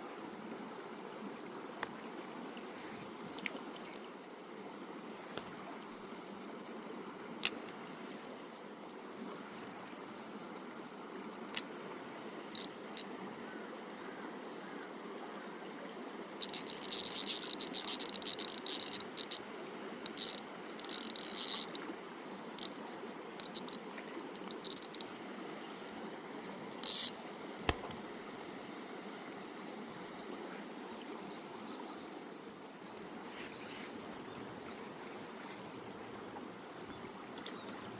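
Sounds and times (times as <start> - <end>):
fishing reel whirring and ticking: 7.4 - 7.7, 11.5 - 11.7, 12.5 - 13.2, 16.4 - 21.9, 22.6 - 22.8, 23.4 - 25.2, 25.8 - 27.2, 27.8 - 28.5
sharp click: 26.8 - 28.4.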